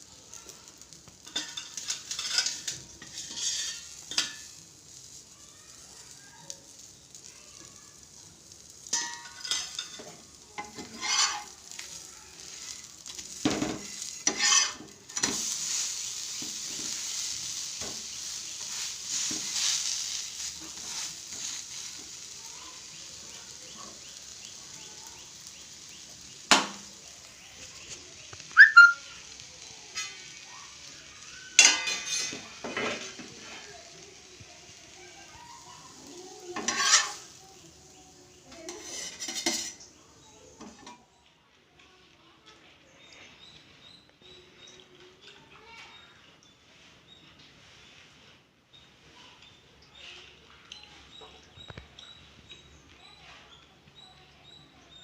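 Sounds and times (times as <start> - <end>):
sizzling hiss: 0.0 - 41.0
metal spoon scraping pot: 1.3 - 4.5, 9.0 - 11.6, 13.8 - 15.5, 36.6 - 37.2, 38.7 - 39.8.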